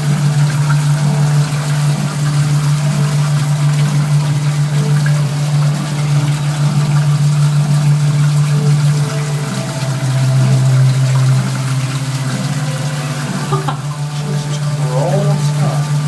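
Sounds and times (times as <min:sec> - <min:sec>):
toilet tank filling: 0:00.0 - 0:16.0.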